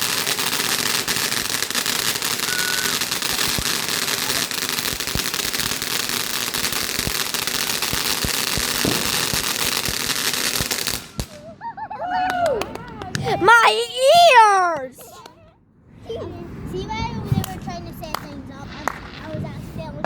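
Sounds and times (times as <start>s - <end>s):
fireworks crackling: 0.0s - 11.5s, 12.6s - 15.2s, 17.0s - 20.0s
heavy firework bangs: 0.0s - 11.5s.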